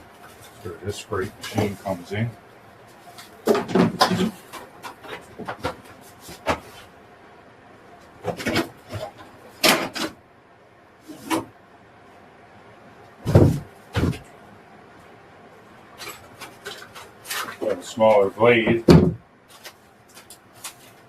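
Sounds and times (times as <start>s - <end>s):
thump: 13.2s - 14.2s, 18.9s - 19.2s.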